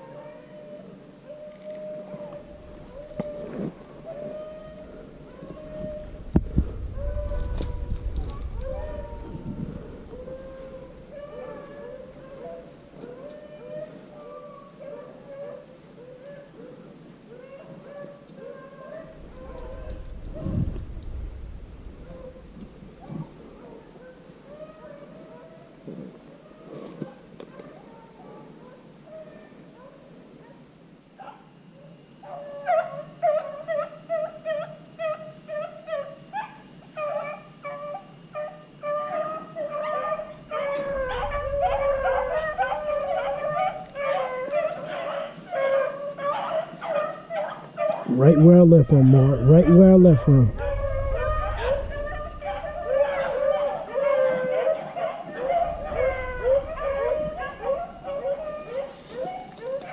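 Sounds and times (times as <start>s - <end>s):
beagles baying: 0.0s - 25.8s, 26.4s - 59.9s.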